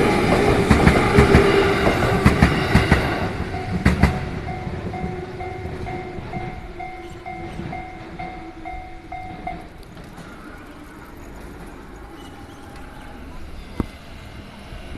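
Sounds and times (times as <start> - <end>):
passing train rumble: 0.0 - 14.9
level crossing warning bell: 3.0 - 13.4.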